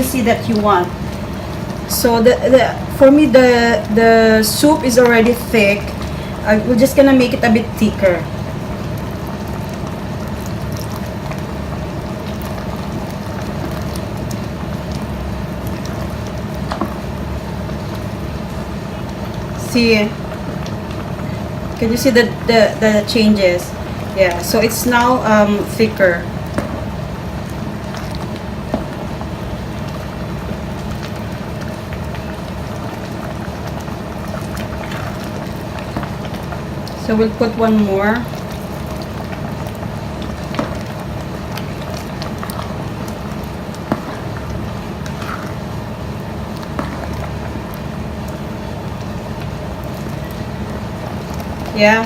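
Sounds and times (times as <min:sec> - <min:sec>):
soup boiling with bubbling hiss: 0:00.0 - 0:52.0
small pops: 0:38.3 - 0:48.4.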